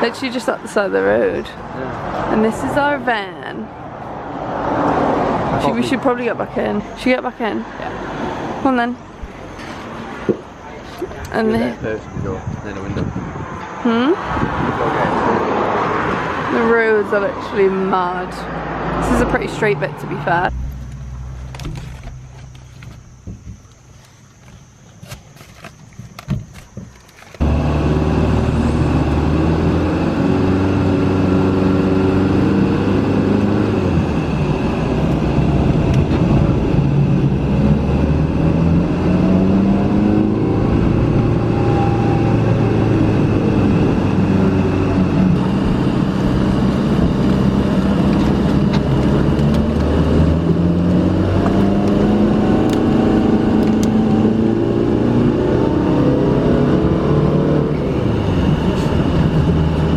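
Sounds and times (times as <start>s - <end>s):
van engine from inside cabin: 19.0s - 24.8s, 26.1s - 59.9s.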